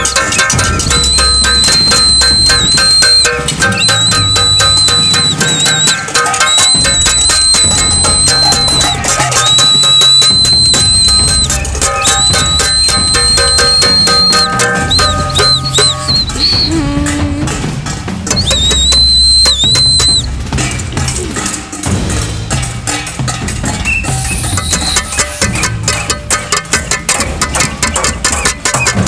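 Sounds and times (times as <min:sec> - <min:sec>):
whistle blasts: 0:00.0 - 0:17.7, 0:18.3 - 0:20.3, 0:23.8 - 0:25.4
pots and pans beaten: 0:00.0 - 0:29.0.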